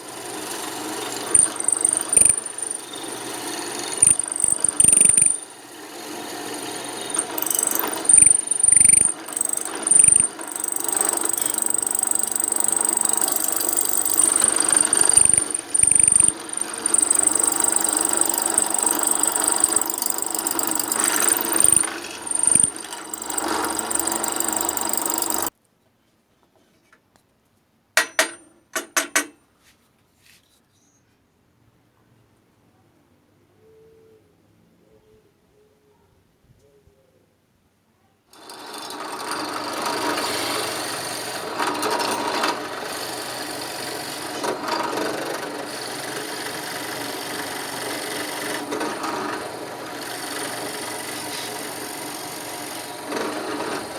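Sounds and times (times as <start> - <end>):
electric drill whining: 0.4 - 5.5, 6.2 - 25.5
sharp clicks: 1.3 - 3.0, 3.9 - 5.4, 7.1 - 25.5.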